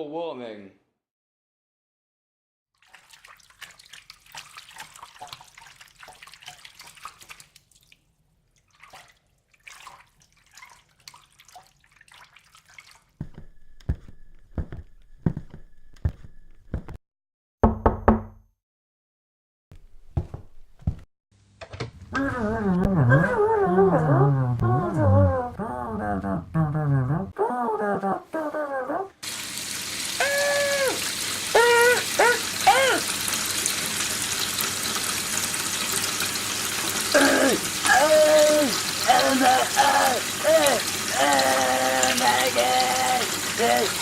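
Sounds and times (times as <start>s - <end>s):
water running and dripping: 2.8s - 13.5s, 29.2s - 44.0s
person humming a tune: 22.2s - 29.1s, 37.2s - 44.0s.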